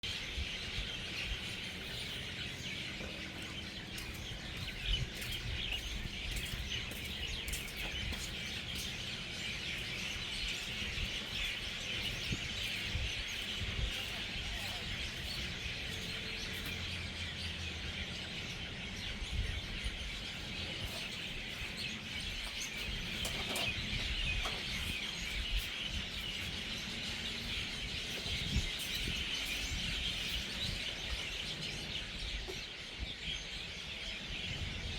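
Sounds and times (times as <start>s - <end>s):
flock of birds chattering: 0.0s - 34.9s.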